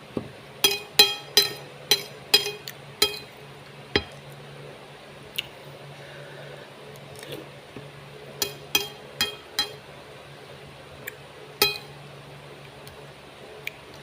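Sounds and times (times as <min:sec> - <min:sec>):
utensil clinking against bowl: 0:00.6 - 0:03.4, 0:04.0 - 0:04.2, 0:08.4 - 0:09.8, 0:11.6 - 0:11.9.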